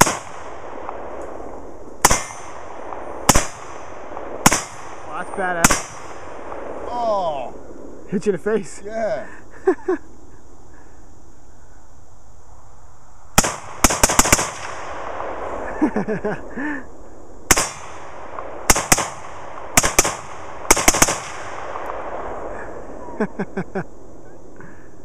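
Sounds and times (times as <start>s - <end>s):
pistol gunshots: 0.0s - 1.2s, 2.0s - 6.8s, 13.4s - 15.5s, 17.5s - 22.3s.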